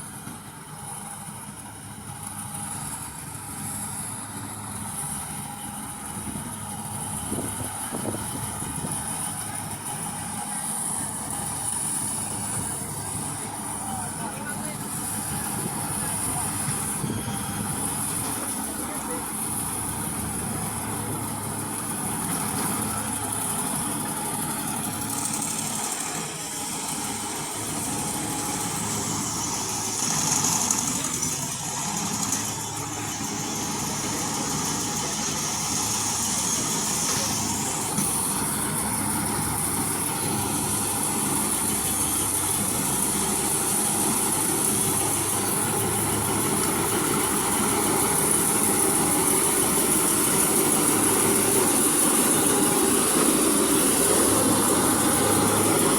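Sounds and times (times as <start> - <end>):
combine harvester engine droning: 0.0 - 55.9
high machine whine: 0.0 - 55.9.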